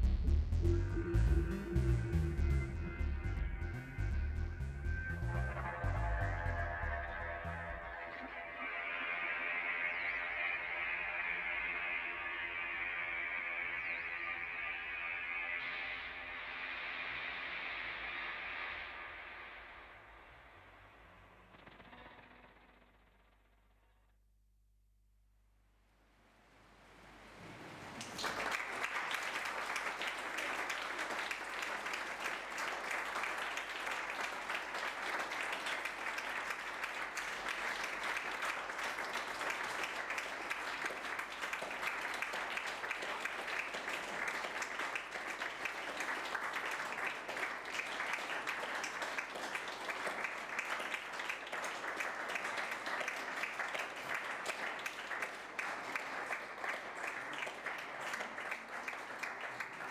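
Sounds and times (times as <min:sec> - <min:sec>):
audience applauding: 0:27.4 - 0:59.9.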